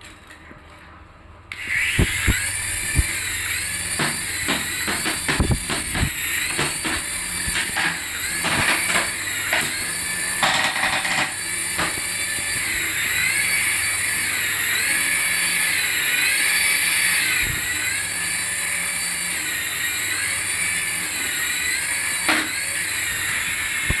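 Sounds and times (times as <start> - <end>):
clicks and knocks: 4.0 - 12.1.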